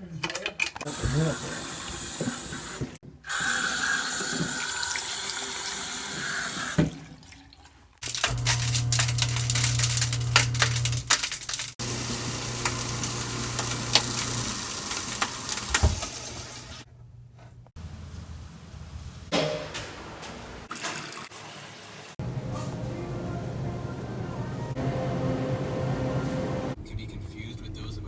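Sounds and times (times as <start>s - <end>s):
tap water running into sink: 0.9s - 7.8s, 11.8s - 16.8s, 20.7s - 22.2s.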